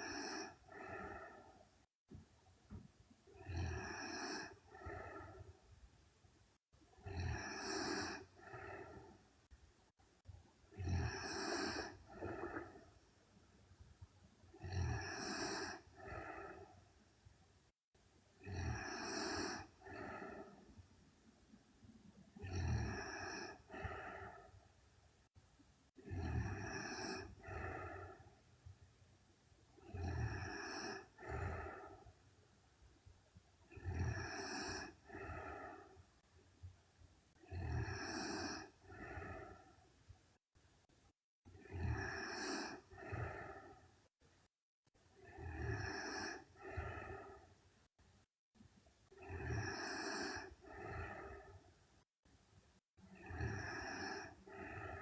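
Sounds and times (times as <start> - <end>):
woman snoring: 0.0 - 1.6, 3.3 - 5.6, 6.9 - 9.2, 10.7 - 13.0, 14.5 - 16.8, 18.4 - 20.7, 22.3 - 24.6, 25.9 - 28.4, 29.8 - 32.1, 33.7 - 36.0, 37.4 - 39.8, 41.5 - 43.9, 45.2 - 47.5, 49.1 - 51.7, 53.0 - 55.0.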